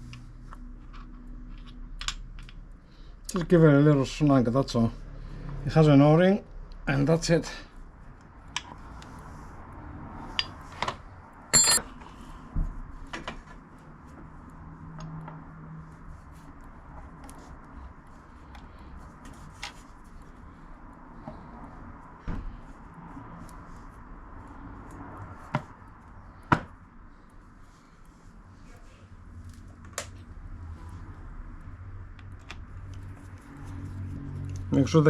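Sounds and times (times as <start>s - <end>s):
tools clinking on metal: 11.5s - 11.9s.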